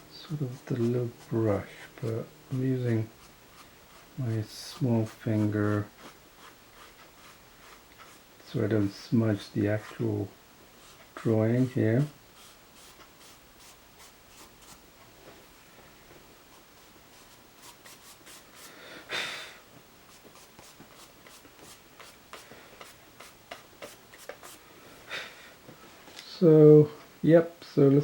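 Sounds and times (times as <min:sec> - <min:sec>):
pencil scratching on paper: 0:03.1 - 0:08.2, 0:12.4 - 0:14.8, 0:16.5 - 0:18.7, 0:20.1 - 0:24.6.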